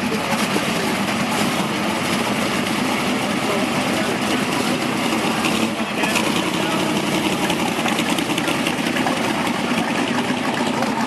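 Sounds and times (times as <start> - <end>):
car engine idling: 0.0 - 11.0
outdoor background noise: 0.0 - 11.0.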